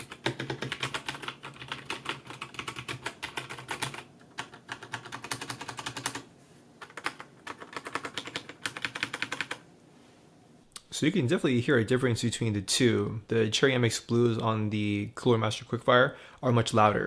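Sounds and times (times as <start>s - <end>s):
mechanical keyboard typing: 0.0s - 9.6s.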